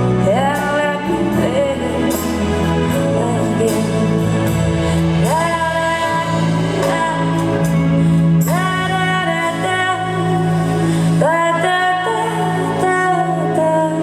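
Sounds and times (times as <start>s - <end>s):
live band playing slow ballad: 0.0s - 14.0s.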